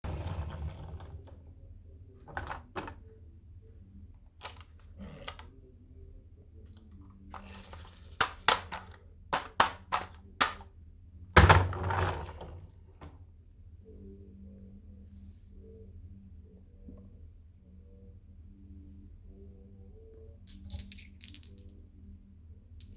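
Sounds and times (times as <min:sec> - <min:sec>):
marbles clicking on wooden pieces: 0:20.5 - 0:21.8
marbles rattling: 0:20.5 - 0:21.8.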